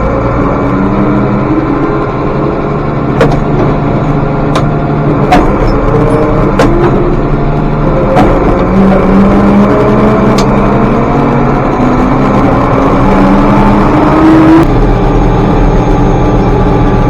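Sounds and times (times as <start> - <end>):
tractor engine running under load: 0.0 - 17.0.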